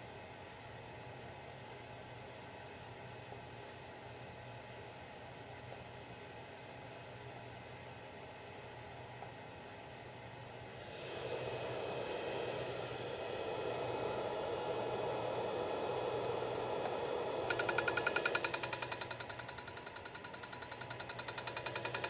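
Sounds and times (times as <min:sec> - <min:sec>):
stage light whirring: 0:10.3 - 0:22.0
rapid regular ticking: 0:17.5 - 0:22.0.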